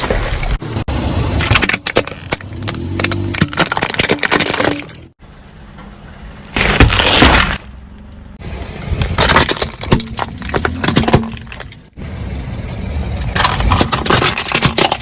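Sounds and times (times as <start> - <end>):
plastic bottles crunching: 1.4 - 5.2, 6.6 - 7.7, 9.0 - 12.0, 13.4 - 15.0.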